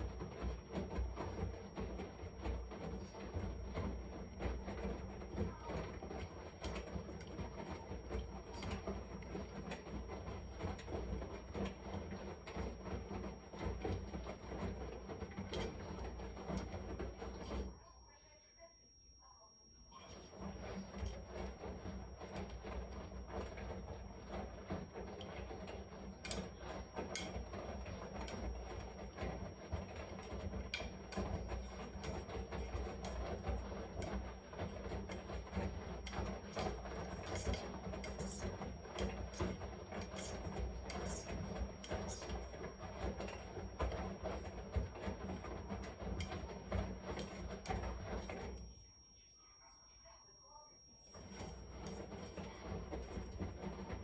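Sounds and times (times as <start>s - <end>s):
washing machine churning: 0.0s - 18.1s, 19.7s - 49.1s, 50.9s - 54.0s
thin high steady tone: 48.4s - 52.6s.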